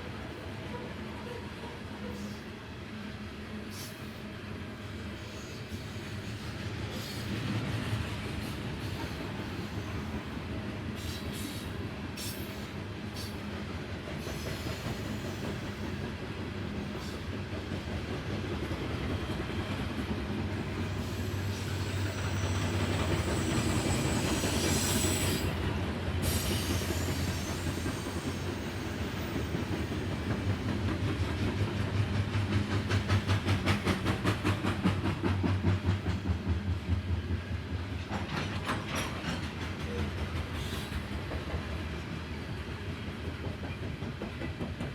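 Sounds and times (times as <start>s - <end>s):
train cars rumbling: 0.0s - 44.9s
wheels clacking over rail joints: 28.6s - 42.3s, 42.9s - 44.9s.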